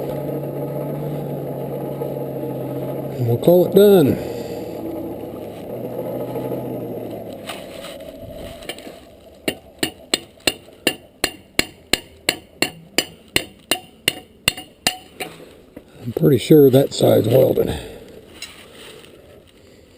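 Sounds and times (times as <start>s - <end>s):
hammer striking steel on anvil: 9.5s - 15.4s.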